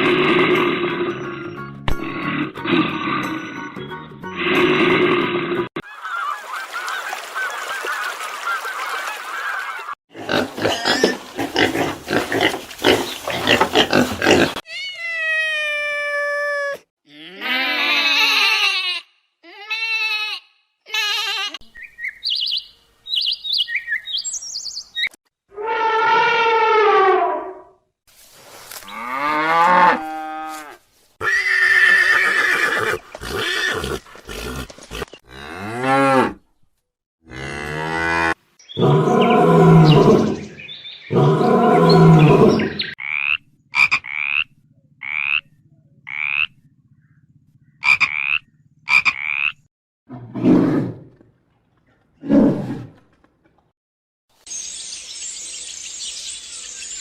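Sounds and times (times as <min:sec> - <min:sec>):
animal calls: 0:38.8 - 0:49.7.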